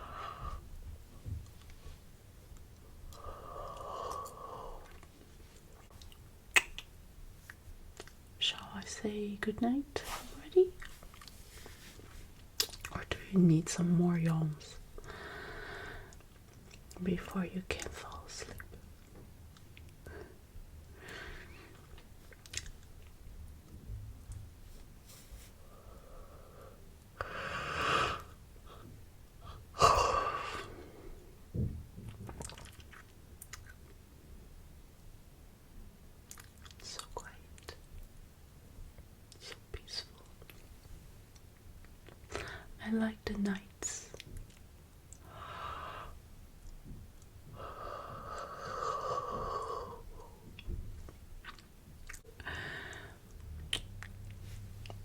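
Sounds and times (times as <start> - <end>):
faint mouth clicks: 6.0 - 6.9.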